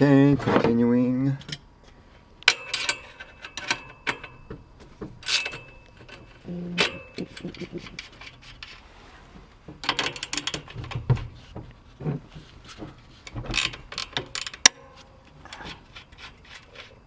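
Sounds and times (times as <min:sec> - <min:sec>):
metallic clicks and rattles of tools: 0:02.4 - 0:04.6, 0:05.2 - 0:08.8, 0:09.8 - 0:11.1, 0:12.7 - 0:17.0.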